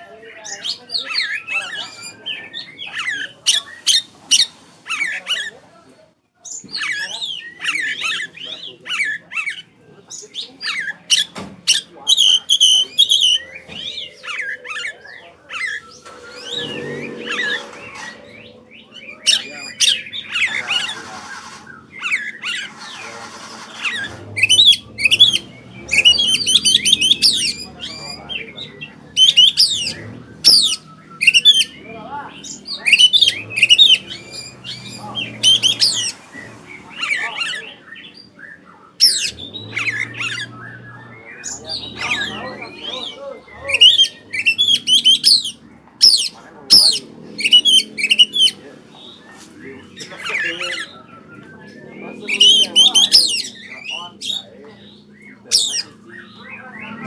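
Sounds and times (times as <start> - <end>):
bird singing whistles and trills: 23.8 - 57.0.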